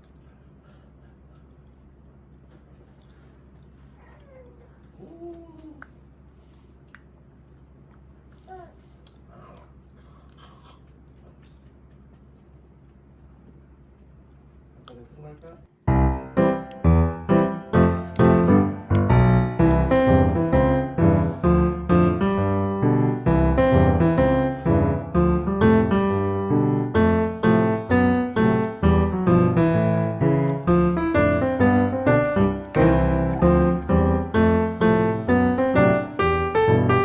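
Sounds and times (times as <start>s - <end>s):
piano music: 15.8s - 37.0s.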